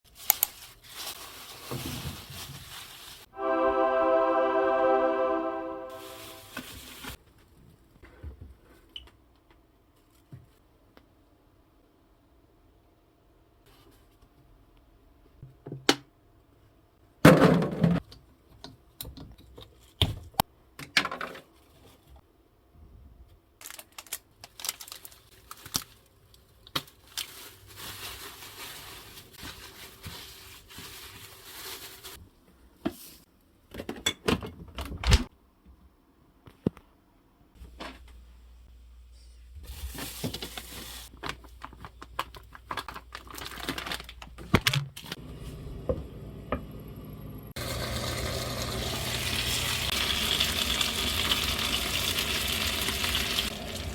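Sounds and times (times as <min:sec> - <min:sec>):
plastic packaging crinkling: 0:00.1 - 0:03.3, 0:23.6 - 0:32.2, 0:39.7 - 0:45.1.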